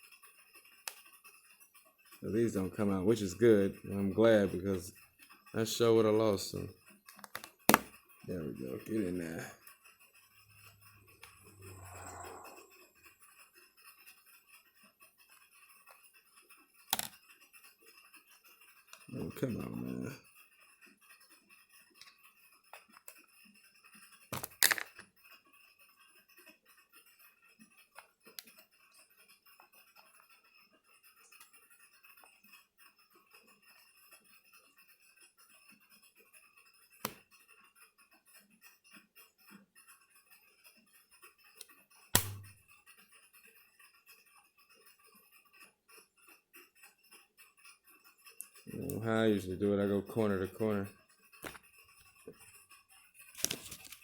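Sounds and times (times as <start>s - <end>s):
clicks handling laptop parts: 7.1s - 7.9s.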